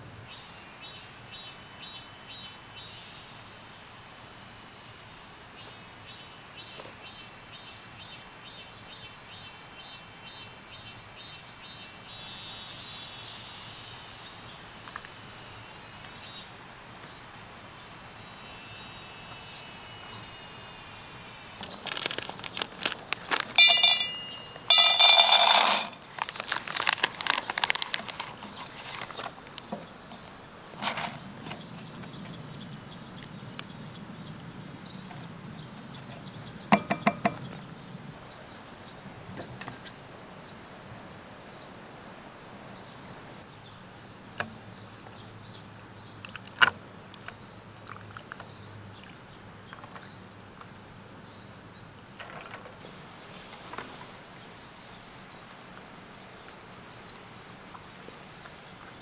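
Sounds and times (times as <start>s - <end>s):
high insect drone: 0.0s - 24.8s
loud crackling and clattering: 21.6s - 29.6s.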